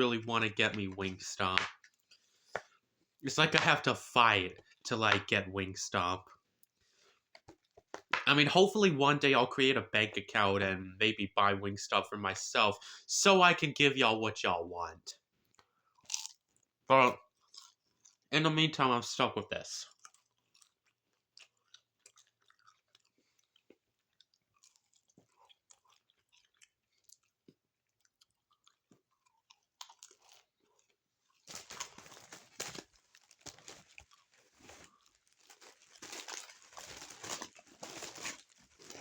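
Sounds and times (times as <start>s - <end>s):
taco shell crunching: 15.9s - 18.3s, 19.9s - 39.0s.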